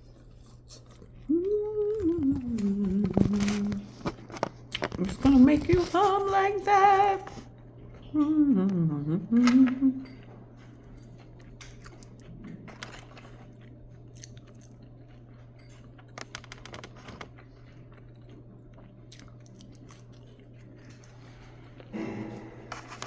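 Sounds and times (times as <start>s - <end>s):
chewing crispy fried chicken: 0.0s - 8.5s, 9.4s - 23.0s
steady low hum: 0.0s - 23.0s.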